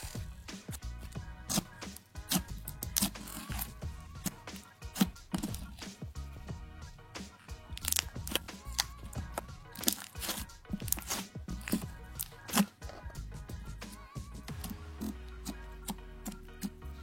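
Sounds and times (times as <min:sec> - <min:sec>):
slime crackling and popping: 0:00.0 - 0:05.9, 0:07.3 - 0:13.0
background music: 0:00.0 - 0:17.0.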